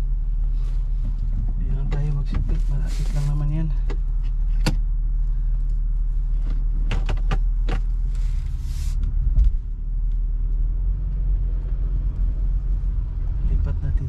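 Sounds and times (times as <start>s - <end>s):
car engine running: 0.0s - 14.0s
thump: 9.2s - 9.6s.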